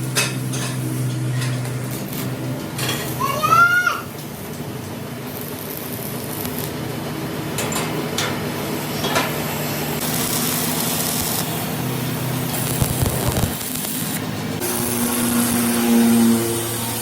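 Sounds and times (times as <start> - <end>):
hissing noise: 12.5 - 14.9
electric motor humming: 12.6 - 17.0.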